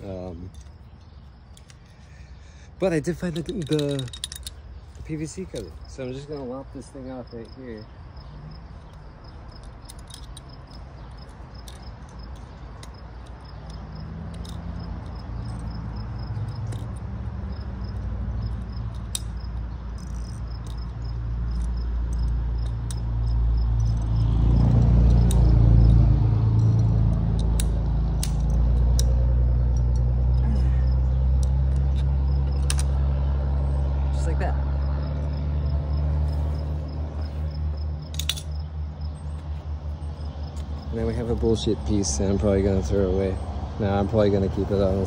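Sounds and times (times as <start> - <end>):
vehicle engine droning: 1.5 - 45.0.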